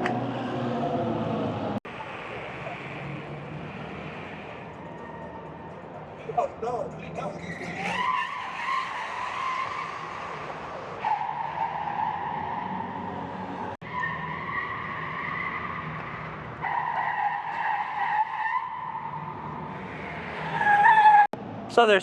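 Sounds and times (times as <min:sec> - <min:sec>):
tires squealing on smooth floor: 0:03.7 - 0:05.7, 0:07.3 - 0:21.3.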